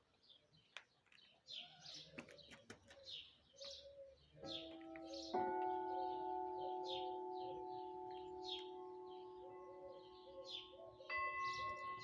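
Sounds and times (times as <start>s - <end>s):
small birds chirping: 0.1s - 12.0s
church bells struck: 4.4s - 12.0s.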